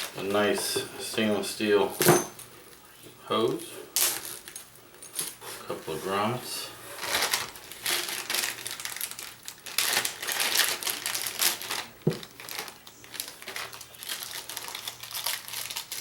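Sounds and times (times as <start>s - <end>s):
plastic packaging crinkling: 4.0s - 5.4s, 6.9s - 16.0s.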